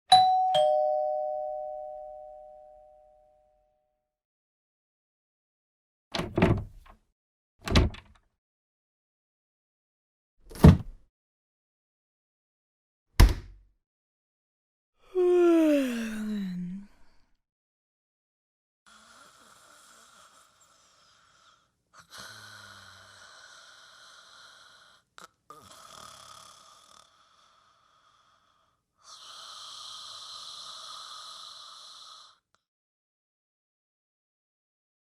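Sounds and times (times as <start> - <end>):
heavy snore-like breathing: 18.9 - 32.5.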